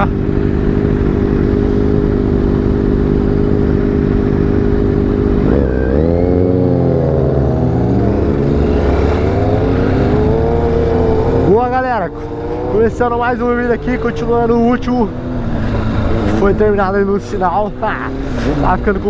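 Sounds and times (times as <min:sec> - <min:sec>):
motorcycle engines revving: 0:00.0 - 0:19.0.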